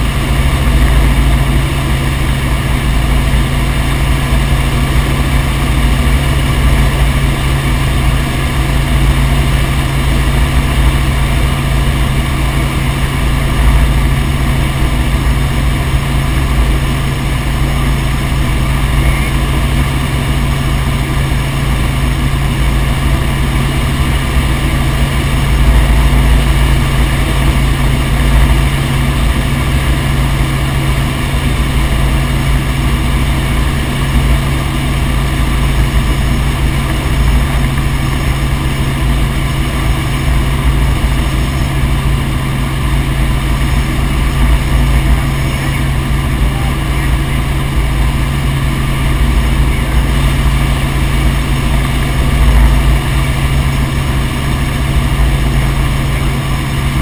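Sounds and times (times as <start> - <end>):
helicopter engine and rotor drone: 0.0 - 57.0.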